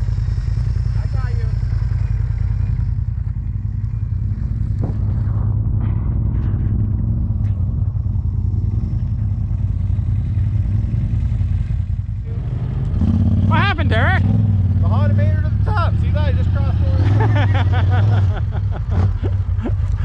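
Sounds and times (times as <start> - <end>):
engine running with low rumble: 0.0 - 20.0.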